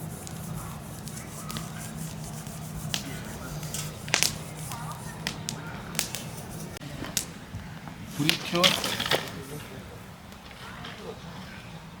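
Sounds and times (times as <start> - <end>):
sharp cracks or snaps: 0.0 - 7.4
steady low hum: 0.0 - 8.4.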